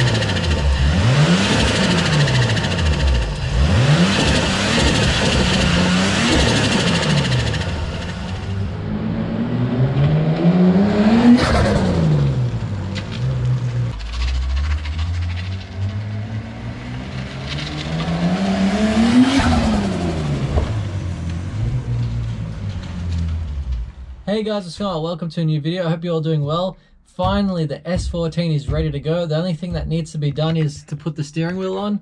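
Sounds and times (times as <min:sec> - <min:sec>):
turbocharged engine revving: 0:00.0 - 0:24.2.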